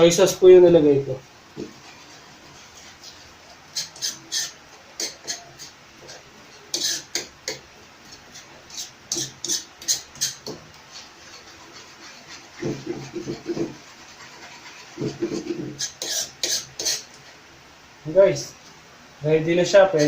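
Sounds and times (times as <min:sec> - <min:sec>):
utensil scraping a pan: 0:01.6 - 0:17.4.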